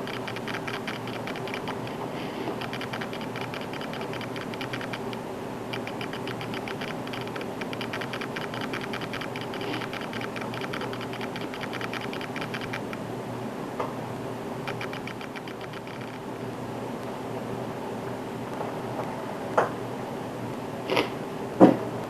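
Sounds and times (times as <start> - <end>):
rapid irregular clicking: 0.0 - 13.0, 14.6 - 16.3
steady low hum: 0.0 - 22.0.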